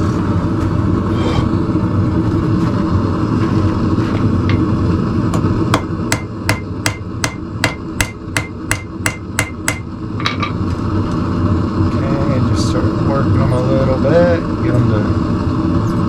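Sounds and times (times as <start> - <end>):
steady low rumble: 0.0 - 16.0
hammer striking steel on anvil: 5.7 - 10.6.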